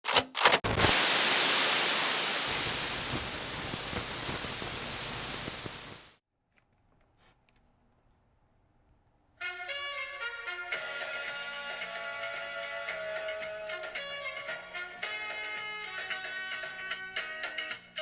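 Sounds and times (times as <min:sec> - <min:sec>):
static-like hiss: 0:00.6 - 0:06.2.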